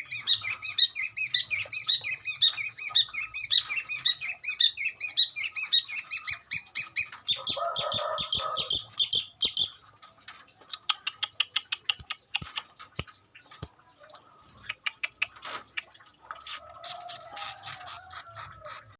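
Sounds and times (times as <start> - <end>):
shrike chattering song: 16.4 - 18.9.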